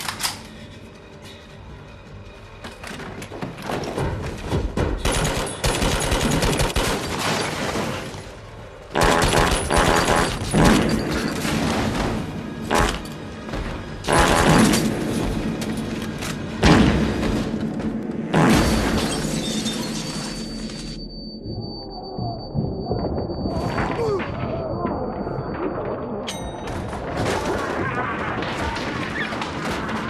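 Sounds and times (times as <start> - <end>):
action film music: 0.0 - 7.2, 7.9 - 27.0
rapid gunfire: 5.0 - 7.2, 9.0 - 10.8.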